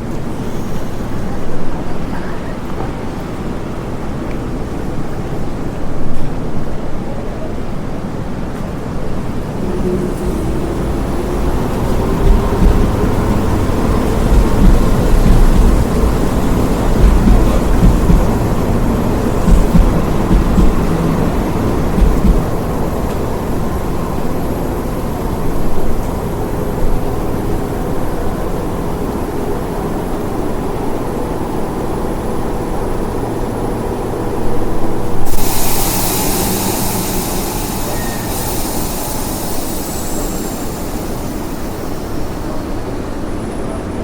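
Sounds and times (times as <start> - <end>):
train rumbling on track: 0.0 - 44.0
loud hiss: 9.2 - 26.3, 34.9 - 44.0.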